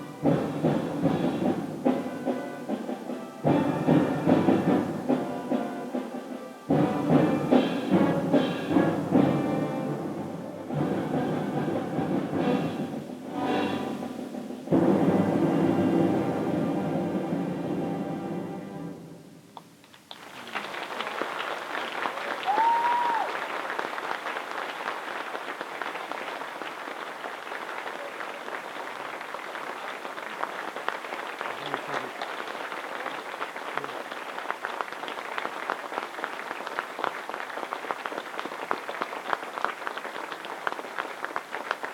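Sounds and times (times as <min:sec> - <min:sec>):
audience applauding: 0:19.8 - 0:41.9.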